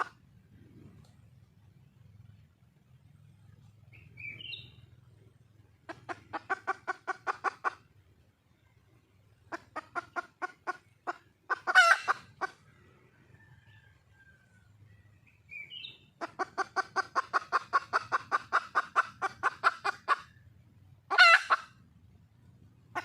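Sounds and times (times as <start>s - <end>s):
hen clucking: 0.0s - 14.0s, 14.8s - 23.0s
hen squawking: 5.9s - 7.8s, 9.5s - 12.6s, 21.1s - 21.8s.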